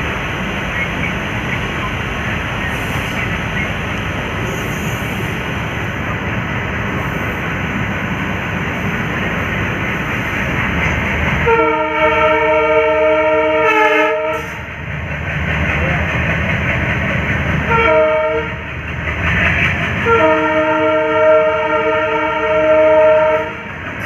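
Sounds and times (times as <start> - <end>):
diesel locomotive engine rumble: 0.0 - 24.0
locomotive horn blast: 11.4 - 14.7, 17.6 - 18.6, 20.0 - 23.7.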